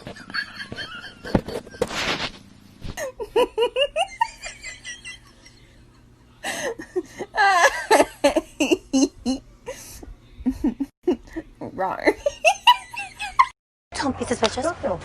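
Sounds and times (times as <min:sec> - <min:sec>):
person laughing: 0:00.0 - 0:01.9, 0:03.0 - 0:05.8, 0:06.5 - 0:11.5.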